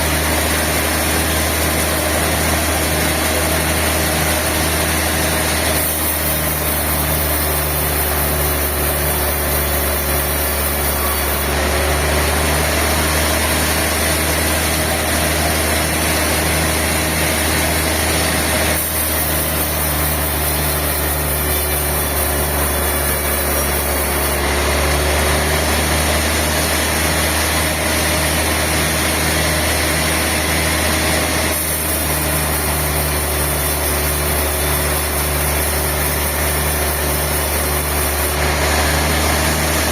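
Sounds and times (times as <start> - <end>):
sawmill machinery droning: 0.0 - 39.9.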